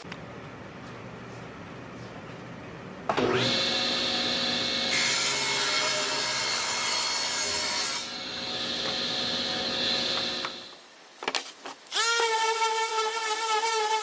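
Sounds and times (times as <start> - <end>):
power saw whine: 3.2 - 10.7.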